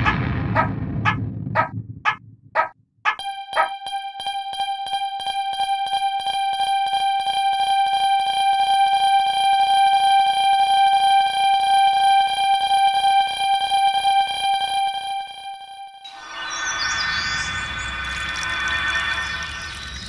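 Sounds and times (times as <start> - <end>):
level-crossing warning bell ringing: 3.1 - 15.5.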